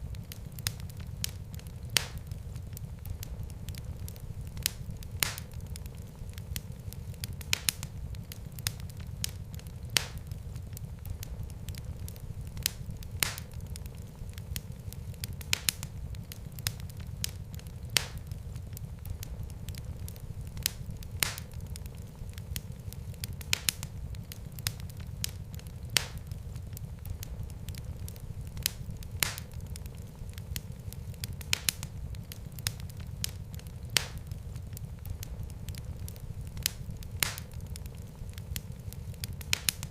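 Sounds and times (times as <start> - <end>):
fire crackling and popping: 0.0 - 39.9
low rumble of flames: 0.0 - 39.9.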